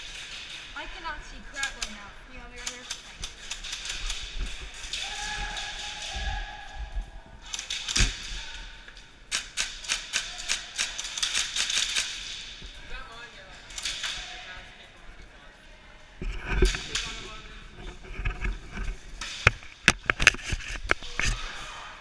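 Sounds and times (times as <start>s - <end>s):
airsoft guns firing: 9.3s - 12.5s.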